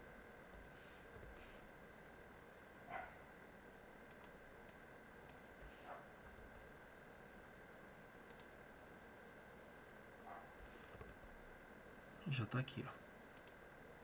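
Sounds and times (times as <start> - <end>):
computer mouse clicks: 0.5 - 1.4, 4.1 - 6.7, 8.3 - 8.6, 10.6 - 11.4, 13.4 - 13.6.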